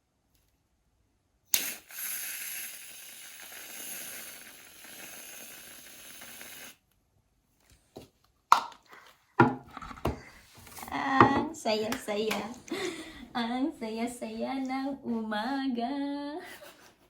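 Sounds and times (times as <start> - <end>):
aerosol can hissing: 1.5 - 6.8.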